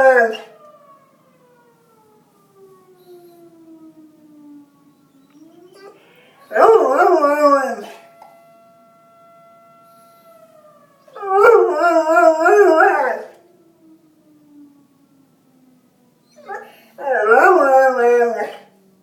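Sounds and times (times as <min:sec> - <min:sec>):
dog howling: 0:00.0 - 0:00.5, 0:05.4 - 0:08.1, 0:11.1 - 0:13.4, 0:16.3 - 0:18.7
faint steady alarm tone: 0:00.0 - 0:19.0.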